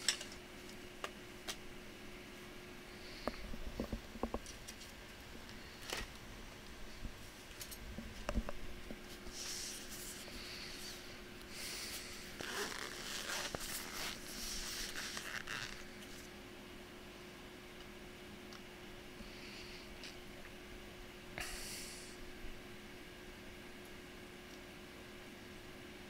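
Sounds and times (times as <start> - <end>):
faint electrical hum: 0.0 - 26.0
rustling on a workbench: 8.9 - 16.3.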